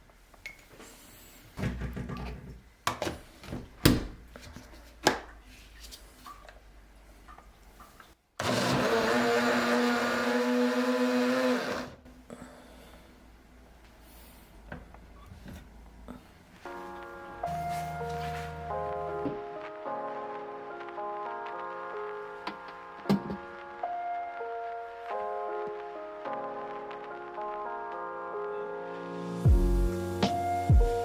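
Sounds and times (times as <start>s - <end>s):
small appliance motor running: 8.4s - 12.0s.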